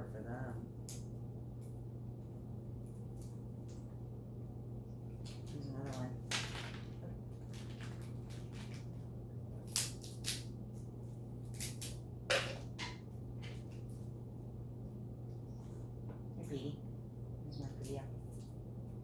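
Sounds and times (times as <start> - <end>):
steady low hum: 0.0 - 19.0
peanut shells cracking: 9.6 - 10.5, 11.5 - 13.6.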